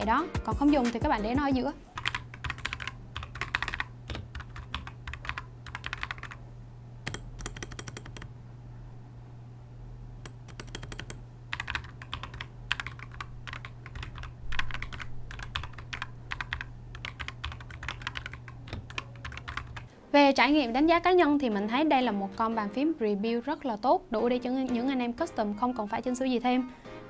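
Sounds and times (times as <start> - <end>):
mechanical keyboard typing: 2.0 - 6.4, 7.0 - 8.3, 10.2 - 19.9.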